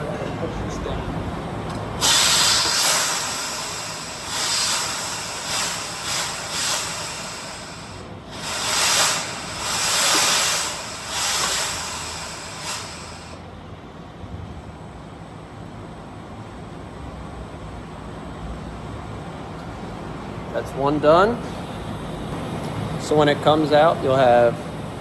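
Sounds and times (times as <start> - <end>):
air press hissing: 1.3 - 13.5, 20.8 - 25.0.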